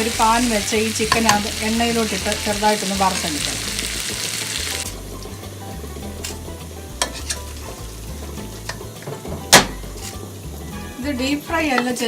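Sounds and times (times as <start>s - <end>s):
chicken sizzling in a pan: 0.0s - 12.0s
utensil clicking against pan: 1.0s - 1.5s.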